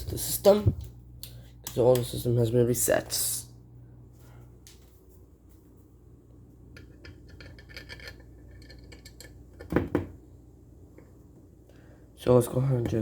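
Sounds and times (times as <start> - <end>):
low steady hum: 0.0 - 13.0
faint clicking and rattling: 6.7 - 9.7.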